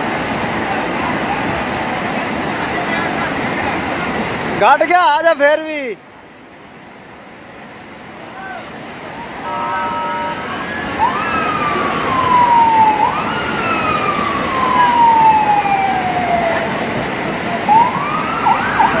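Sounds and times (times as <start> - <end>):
loud steady rushing noise: 0.0 - 19.0
siren wailing: 9.3 - 16.9, 17.6 - 19.0.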